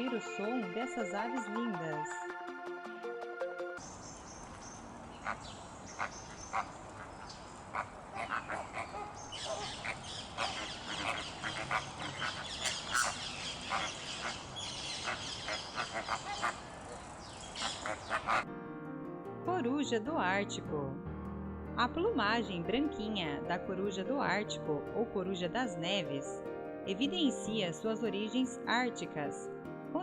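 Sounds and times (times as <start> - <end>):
flamingos honking: 5.0 - 18.5.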